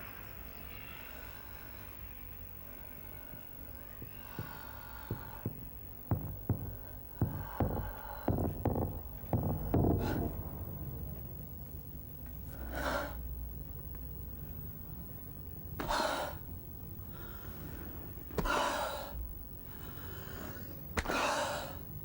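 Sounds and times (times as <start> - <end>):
low steady hum: 0.0 - 22.0
sharp knocks: 4.3 - 12.4.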